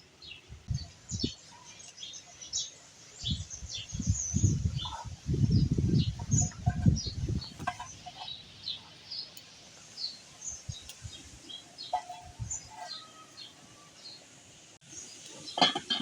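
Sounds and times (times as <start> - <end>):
small birds chirping: 0.2 - 16.0.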